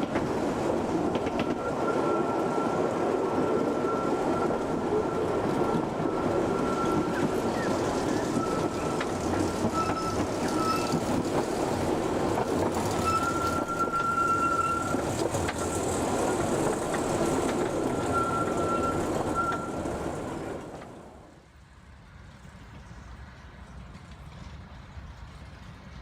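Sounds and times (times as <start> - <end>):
small train running on track: 0.0 - 26.0
thin high squeal: 9.7 - 11.1, 13.0 - 15.0.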